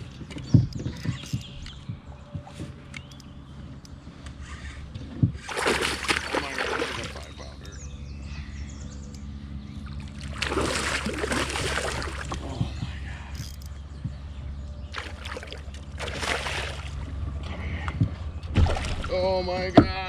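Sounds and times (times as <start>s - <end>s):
steady low hum: 0.0s - 20.0s
water splashing around a kayak: 5.0s - 7.8s, 9.9s - 12.9s, 14.8s - 17.3s, 18.5s - 19.6s.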